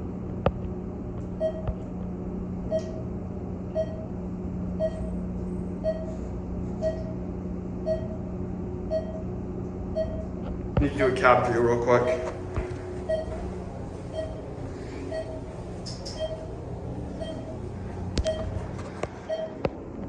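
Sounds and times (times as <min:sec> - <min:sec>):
low hum inside elevator: 0:00.0 - 0:20.0
elevator signal beeping: 0:01.4 - 0:01.8, 0:02.7 - 0:03.1, 0:03.7 - 0:04.2, 0:04.8 - 0:05.2, 0:05.8 - 0:10.4, 0:11.0 - 0:12.4, 0:13.0 - 0:19.7.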